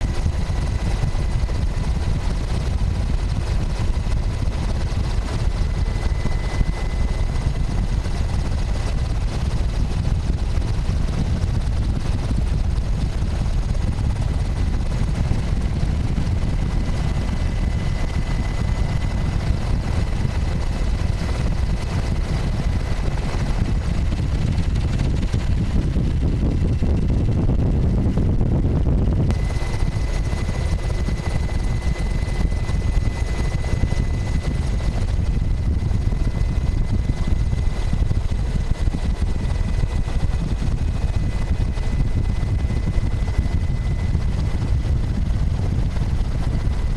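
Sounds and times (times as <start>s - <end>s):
faint engine whine: 0.0s - 46.9s
helicopter rotor rumble: 0.0s - 46.9s.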